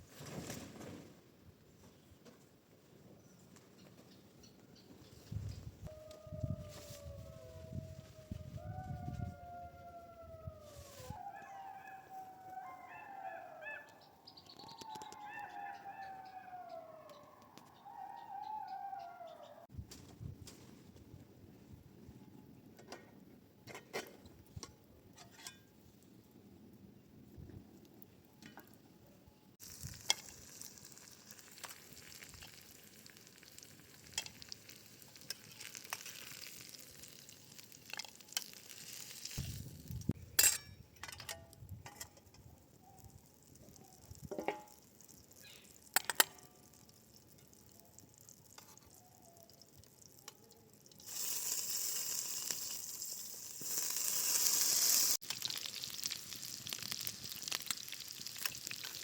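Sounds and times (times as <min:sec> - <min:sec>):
food sizzling in hot oil: 0:29.6 - 0:40.1, 0:42.6 - 0:59.0.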